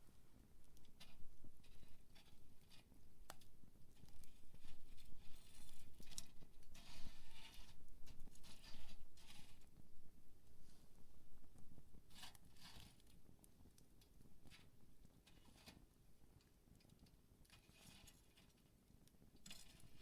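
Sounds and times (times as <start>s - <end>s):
campfire crackling: 0.0s - 4.8s.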